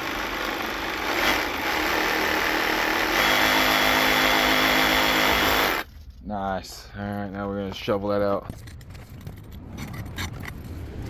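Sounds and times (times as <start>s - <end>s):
chainsaw cutting: 0.0s - 5.9s.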